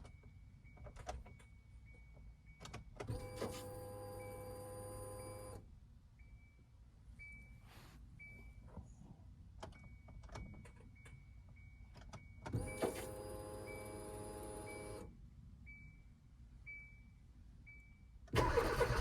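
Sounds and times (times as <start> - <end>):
electric fuel pump whining: 18.4 - 19.0.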